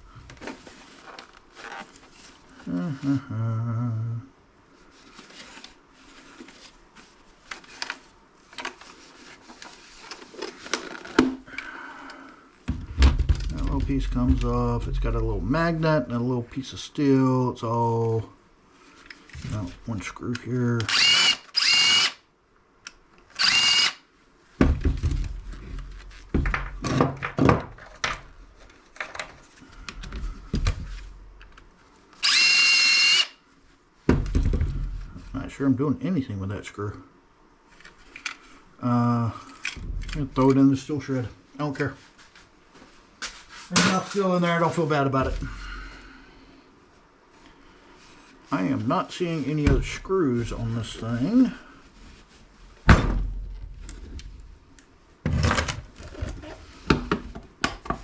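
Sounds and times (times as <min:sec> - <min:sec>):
can opener motor buzzing: 0:20.9 - 0:22.2, 0:23.4 - 0:24.0, 0:32.2 - 0:33.3
power drill whirring: 0:20.9 - 0:22.2, 0:23.4 - 0:24.0, 0:32.2 - 0:33.4.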